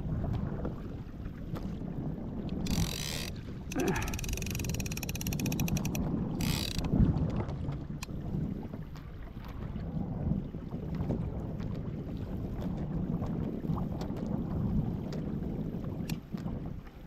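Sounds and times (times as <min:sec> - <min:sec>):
low wind and water rumble: 0:00.0 - 0:17.0
fishing reel ratcheting: 0:02.6 - 0:07.0.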